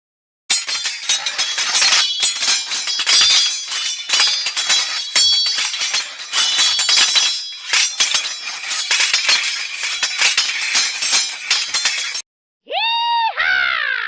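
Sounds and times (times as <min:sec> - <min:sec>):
metal clanging on metal: 0:00.5 - 0:12.2
loud pitched cry: 0:12.7 - 0:14.0.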